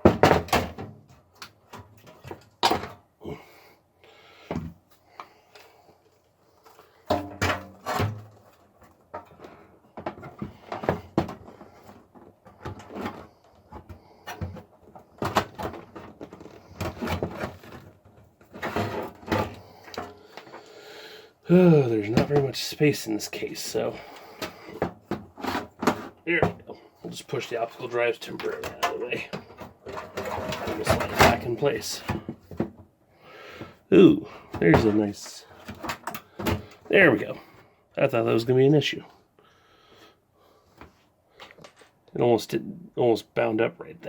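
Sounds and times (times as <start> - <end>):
knocks clunks and scrapes in pc case: 7.2 - 8.4, 10.0 - 20.2, 28.4 - 32.8.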